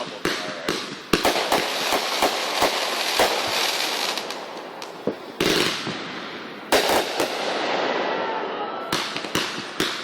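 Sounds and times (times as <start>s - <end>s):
firework crackling hiss: 0.0s - 7.6s
firework bangs: 0.0s - 10.0s.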